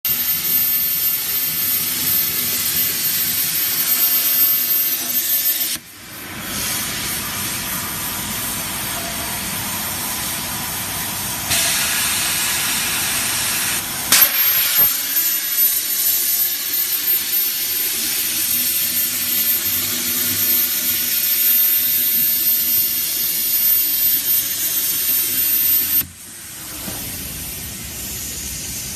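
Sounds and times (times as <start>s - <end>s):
plasma torch hissing: 0.1s - 28.9s
sharp click: 14.1s - 14.9s.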